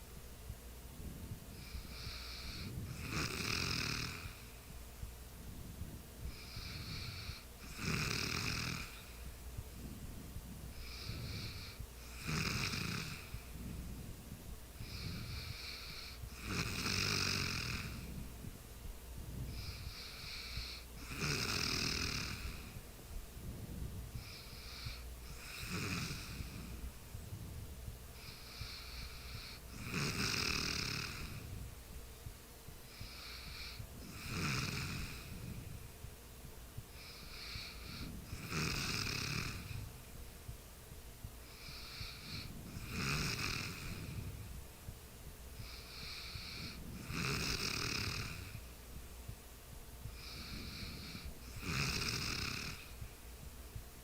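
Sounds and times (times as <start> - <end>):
person snoring: 1.6 - 4.4, 6.3 - 9.1, 10.7 - 13.6, 14.8 - 18.2, 19.5 - 22.8, 24.2 - 26.8, 28.2 - 31.6, 32.9 - 35.7, 37.0 - 39.9, 41.5 - 44.4, 45.6 - 48.6, 50.2 - 53.0.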